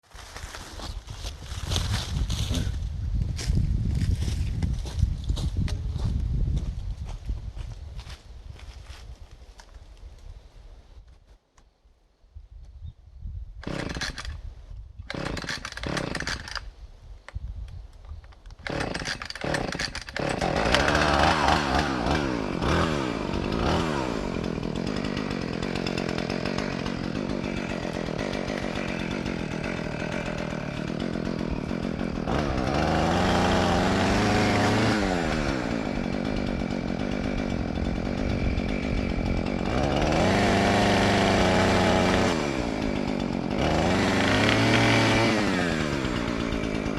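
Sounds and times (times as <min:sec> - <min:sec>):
chainsaw engine revving: 0:13.6 - 0:14.4, 0:15.1 - 0:16.6, 0:18.6 - 0:46.9.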